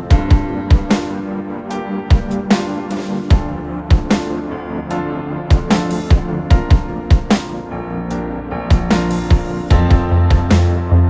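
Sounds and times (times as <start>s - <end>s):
deep drum beat: 0.1s - 1.0s, 2.1s - 2.5s, 3.3s - 4.2s, 5.5s - 7.4s, 8.7s - 10.8s.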